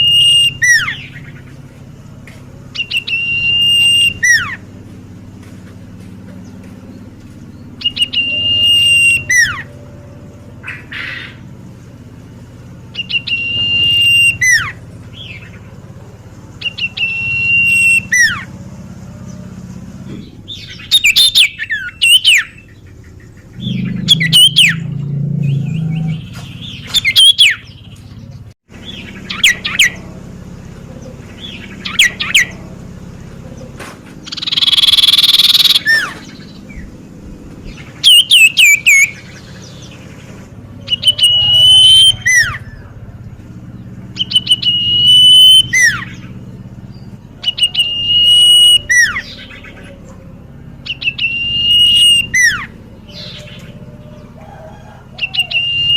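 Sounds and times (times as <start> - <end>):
bird whistled calls: 0.0 - 1.6, 2.7 - 4.7, 7.5 - 9.8, 12.9 - 15.6, 16.6 - 18.6, 20.5 - 27.9, 28.8 - 30.1, 30.9 - 32.7, 33.5 - 36.9, 37.7 - 40.0, 40.8 - 43.0, 44.1 - 50.2, 50.8 - 55.9
harsh rasping bird call: 0.0 - 1.7, 7.6 - 12.1, 30.9 - 36.9, 37.7 - 43.1, 47.2 - 55.9.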